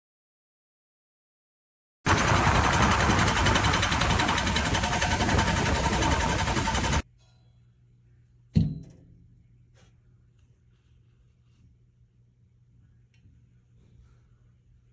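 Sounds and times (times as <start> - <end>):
blower rushing with whine: 2.1 - 7.0
low hum: 2.1 - 7.0
knock: 8.6 - 9.0.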